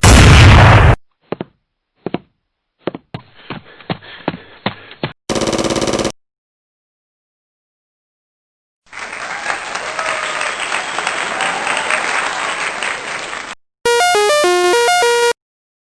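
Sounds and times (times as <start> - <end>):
crowd applauding: 8.9 - 13.6
short electronic melody: 13.9 - 15.4.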